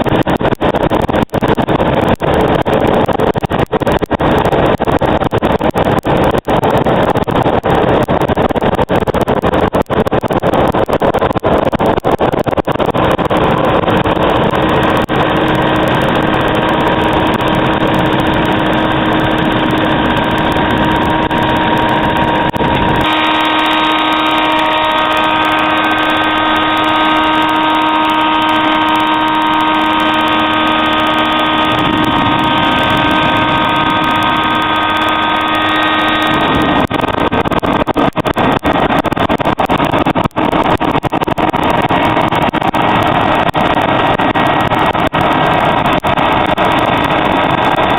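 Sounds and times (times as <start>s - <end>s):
low rumble: 0.0s - 47.9s
oil burner rushing: 0.0s - 47.9s
steady hum with held tones: 12.6s - 43.0s.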